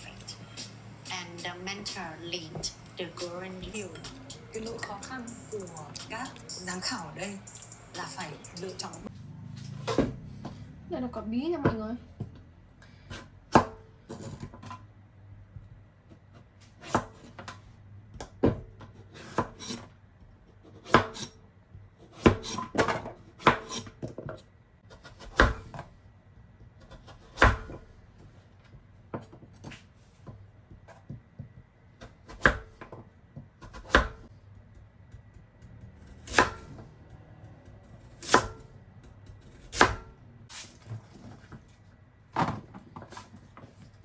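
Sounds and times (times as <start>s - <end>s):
knife chopping on cutting board: 16.1s - 17.5s, 18.1s - 19.9s, 20.6s - 21.4s, 22.0s - 25.9s, 26.6s - 27.9s, 30.7s - 37.0s, 37.8s - 40.2s.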